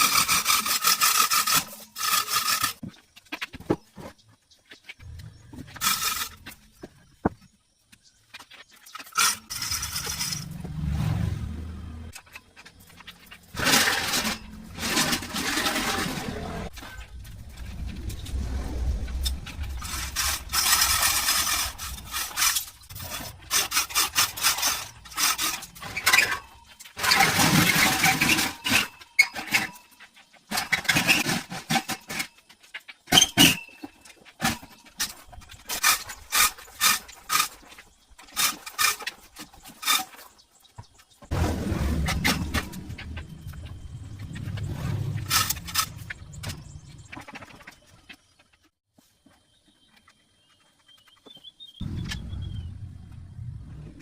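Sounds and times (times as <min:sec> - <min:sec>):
scraping on tractor: 0:00.0 - 0:54.0.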